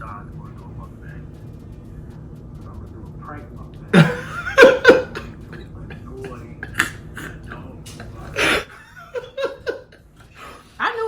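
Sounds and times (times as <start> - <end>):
person laughing: 4.0 - 11.0
breathy voice burst: 8.4 - 8.8.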